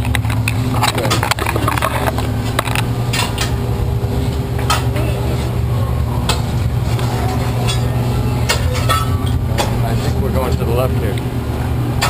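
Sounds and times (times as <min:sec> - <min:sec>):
clicks and clatters: 0:00.0 - 0:03.6
steady low drone: 0:00.0 - 0:12.0.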